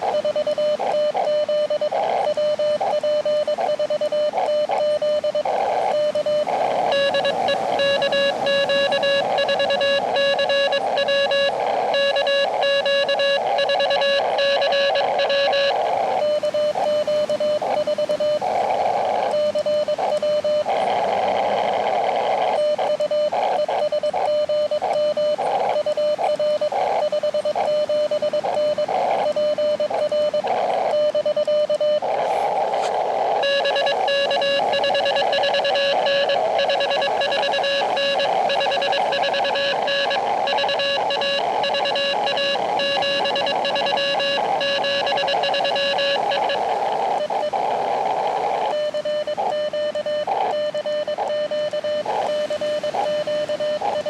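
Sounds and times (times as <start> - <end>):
morse code tones: 0.0 - 54.0
receiver hiss: 0.0 - 54.0.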